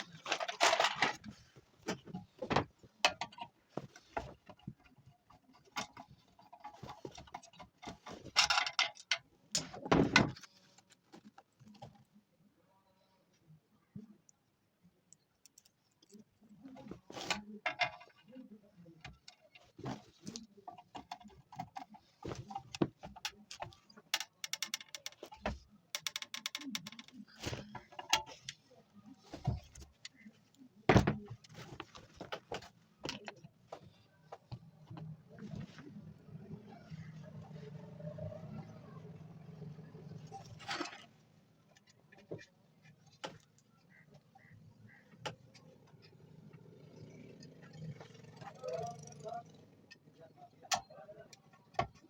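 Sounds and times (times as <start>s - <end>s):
hard parts clicking and knocking: 0.0s - 12.0s, 15.4s - 35.6s, 45.0s - 52.0s.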